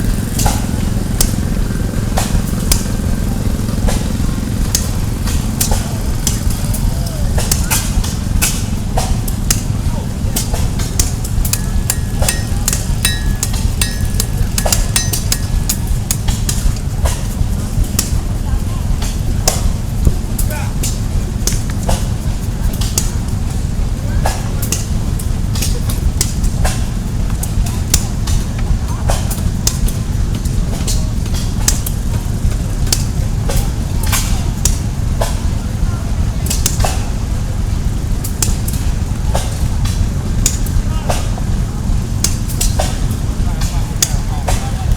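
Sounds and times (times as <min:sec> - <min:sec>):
steady low rumble: 0:00.0 - 0:44.9
hammer striking metal on anvil: 0:10.4 - 0:17.4.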